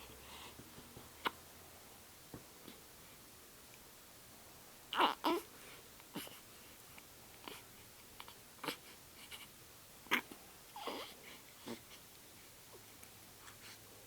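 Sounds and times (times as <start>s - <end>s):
baby hiccuping: 4.9s - 5.4s, 10.1s - 11.1s.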